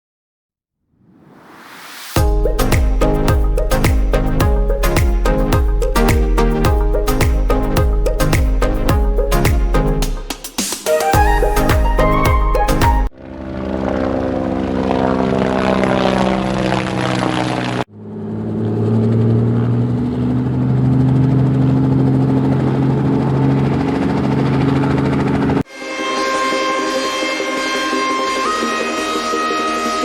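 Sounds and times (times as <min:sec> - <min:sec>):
propeller whirring: 0:11.2 - 0:30.0.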